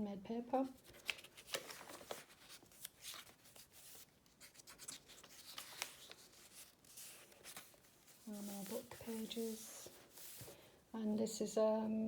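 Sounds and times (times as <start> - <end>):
paper pages rustling: 0.8 - 10.7.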